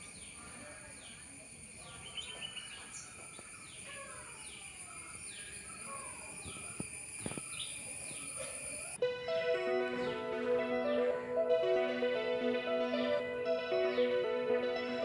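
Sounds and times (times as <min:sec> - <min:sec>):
high-pitched drone: 0:09.0 - 0:15.0.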